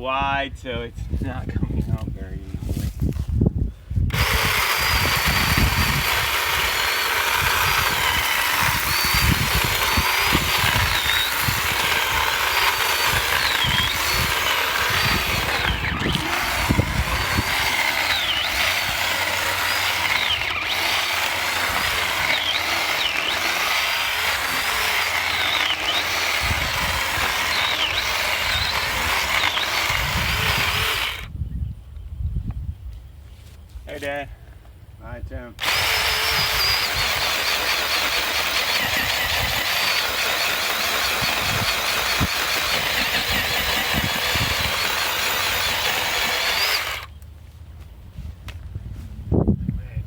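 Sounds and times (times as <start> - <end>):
electric chainsaw cutting wood: 4.1 - 31.3, 35.6 - 47.2.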